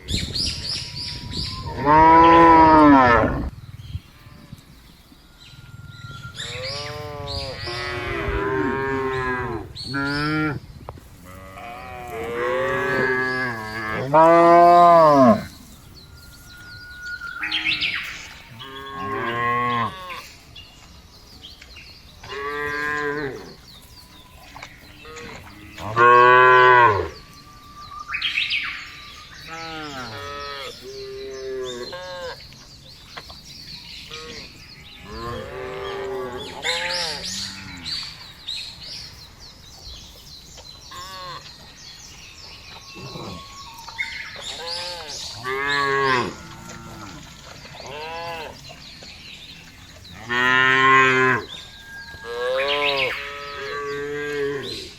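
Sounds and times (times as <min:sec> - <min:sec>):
cows mooing: 0:01.7 - 0:04.6, 0:05.6 - 0:10.6, 0:11.2 - 0:15.6, 0:17.4 - 0:20.3, 0:22.3 - 0:23.6, 0:25.0 - 0:27.2, 0:34.1 - 0:38.1, 0:44.4 - 0:48.7, 0:50.1 - 0:51.6, 0:52.2 - 0:54.9.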